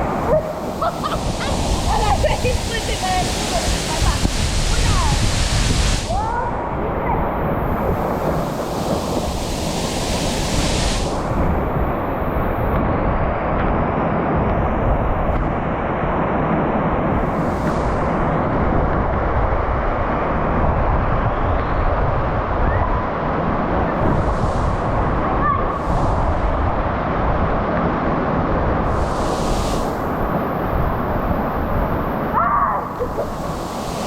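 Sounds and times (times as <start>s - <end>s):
waterfall rushing: 0.0s - 12.7s, 28.8s - 34.0s
water splashing hiss: 0.1s - 12.8s, 17.2s - 18.2s, 23.9s - 26.5s, 28.8s - 34.0s.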